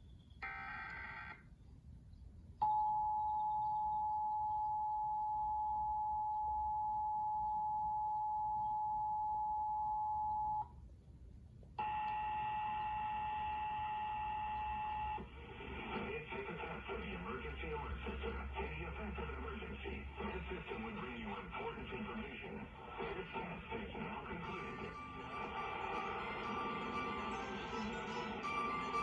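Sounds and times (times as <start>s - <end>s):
steady multi-pitch tone: 22.6s - 29.0s.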